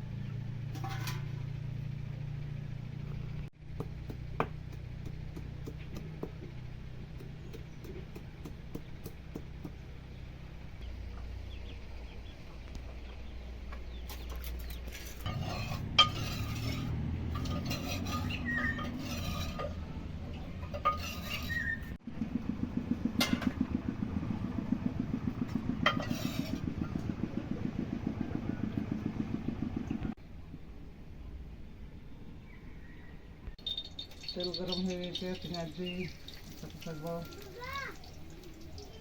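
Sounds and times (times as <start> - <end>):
metal pots and utensils clanking: 0.7 - 1.5, 14.1 - 22.0, 25.8 - 26.8, 33.6 - 37.4
rhythmic scraping or knocking: 14.9 - 19.8.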